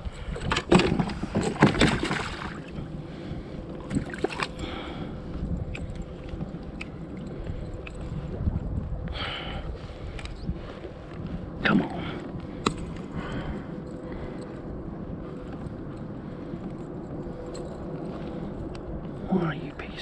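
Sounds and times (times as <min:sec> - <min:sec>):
wind: 0:00.0 - 0:20.0
water noise: 0:00.8 - 0:03.0, 0:03.8 - 0:04.9.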